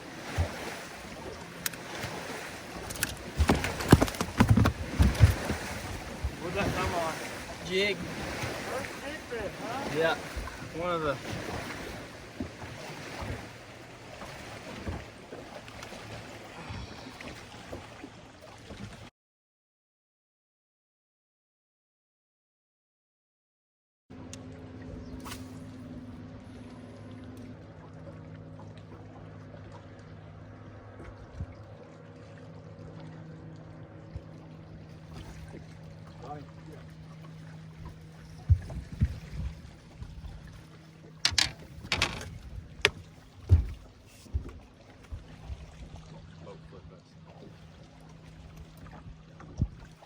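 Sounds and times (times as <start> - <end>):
boat motor humming: 0.0 - 19.1, 24.1 - 50.0
water: 0.0 - 19.1, 24.1 - 50.0
wind: 0.0 - 19.1, 24.1 - 50.0
light knocks and bumps: 2.9 - 6.4, 41.3 - 44.6
short knocks: 41.2 - 43.8.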